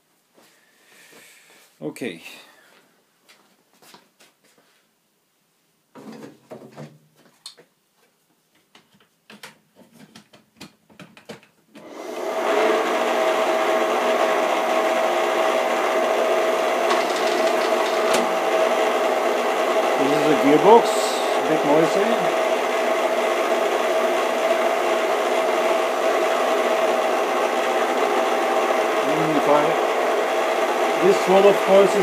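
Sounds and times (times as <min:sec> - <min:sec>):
clicks and knocks of handled parts: 0:08.5 - 0:11.6
milling machine motor whining: 0:11.8 - 0:32.0.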